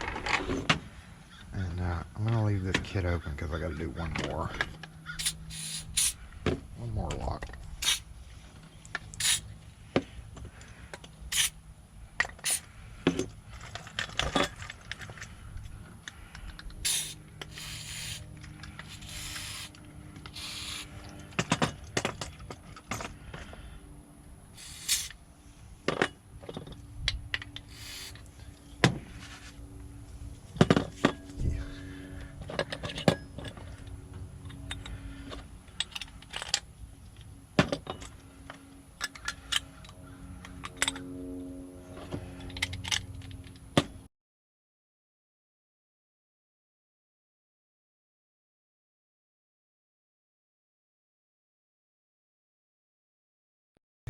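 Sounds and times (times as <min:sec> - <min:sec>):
tools clicking and scraping: 0:04.5 - 0:06.2, 0:07.4 - 0:08.1, 0:08.8 - 0:09.6, 0:10.3 - 0:11.6, 0:12.2 - 0:23.5, 0:24.6 - 0:25.2, 0:25.9 - 0:28.4, 0:32.5 - 0:41.1, 0:42.0 - 0:43.7
short hissing scrapes: 0:05.2 - 0:06.3, 0:07.8 - 0:08.1, 0:09.2 - 0:09.6, 0:11.3 - 0:11.6, 0:12.4 - 0:12.8, 0:16.8 - 0:21.0, 0:24.6 - 0:25.2, 0:27.6 - 0:28.2.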